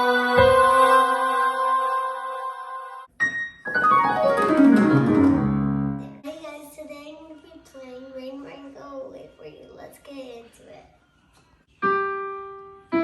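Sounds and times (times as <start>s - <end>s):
electronic keyboard notes: 3.2s - 6.2s.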